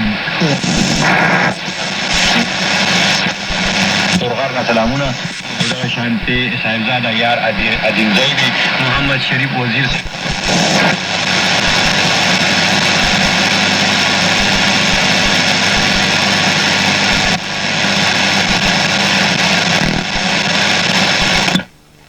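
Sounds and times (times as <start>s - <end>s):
radio static with low buzz: 0.0s - 22.0s.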